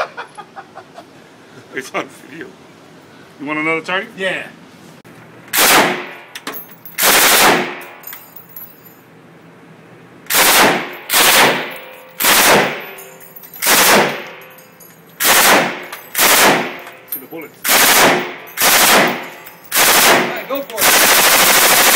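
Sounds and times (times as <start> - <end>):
gunshots with ringing decay: 5.6 - 6.2, 7.0 - 7.9, 10.3 - 12.9, 13.6 - 14.4, 15.2 - 16.8, 17.7 - 21.9.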